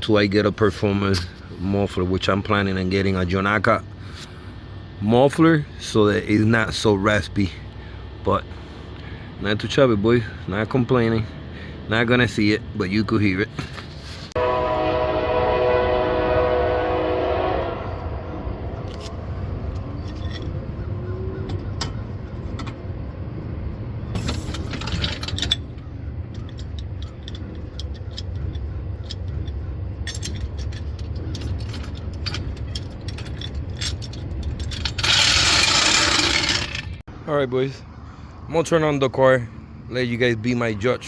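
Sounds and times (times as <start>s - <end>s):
metallic clicks and jingles: 18.9s - 20.9s, 24.2s - 37.0s.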